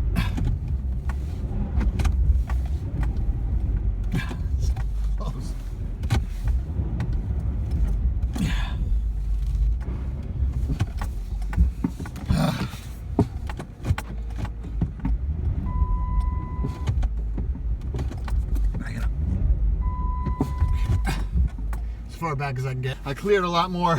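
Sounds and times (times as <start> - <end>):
car engine running: 0.0 - 23.9
electronic warning beep: 19.8 - 21.1.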